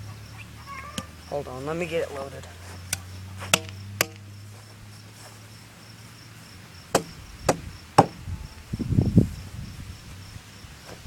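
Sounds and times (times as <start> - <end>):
sharp knocks: 3.5 - 4.2, 6.9 - 8.2
dull low thumps: 6.8 - 10.4.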